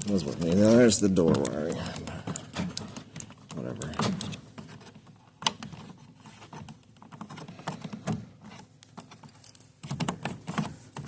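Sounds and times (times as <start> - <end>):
small parts clicking and tapping: 0.0 - 11.0.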